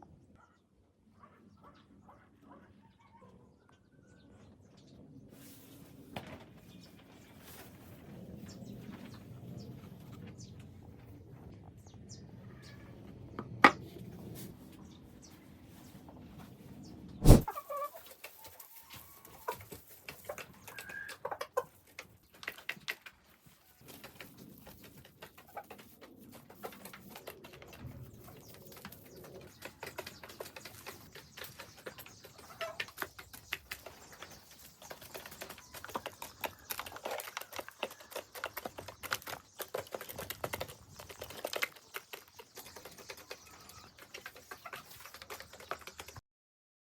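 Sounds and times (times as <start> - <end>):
chickens clucking: 17.2 - 46.2
chickens pecking feeder clicks: 18.2 - 46.2.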